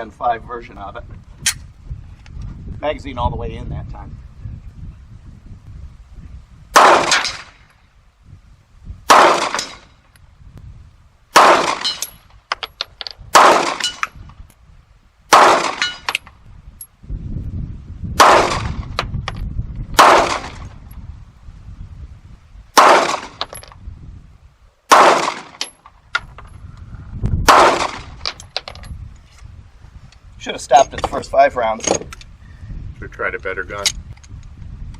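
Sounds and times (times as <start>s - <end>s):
pistol shots: 6.8s - 7.6s, 9.1s - 9.9s, 11.3s - 12.1s, 13.3s - 14.0s, 15.3s - 16.1s, 18.2s - 18.9s, 20.0s - 20.7s, 22.8s - 23.5s, 24.9s - 25.7s, 27.4s - 28.2s.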